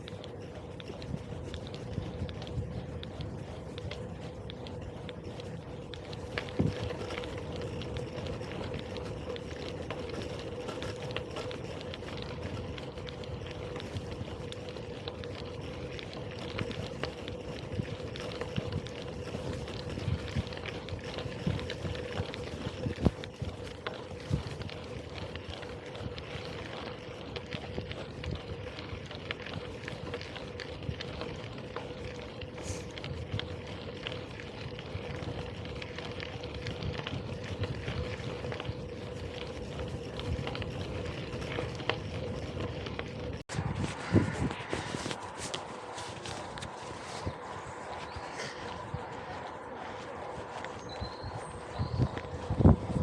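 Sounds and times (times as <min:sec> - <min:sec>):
bicycle tyre rumble: 0:00.0 - 0:53.0
wind on microphone: 0:00.0 - 0:53.0.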